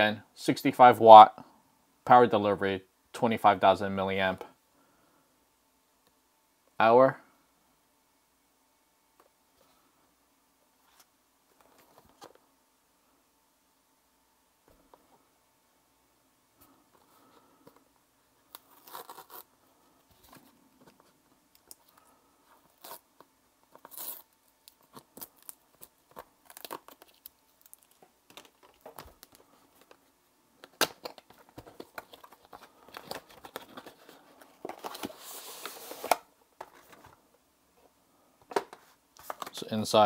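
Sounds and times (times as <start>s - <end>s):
packaging tearing and crinkling: 23.8s - 29.4s.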